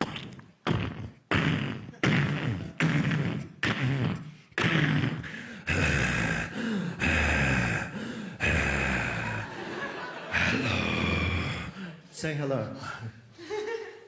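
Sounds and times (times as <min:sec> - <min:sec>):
vocal thud-like hits: 0:00.0 - 0:09.3
sustained vocal noises: 0:02.5 - 0:12.0.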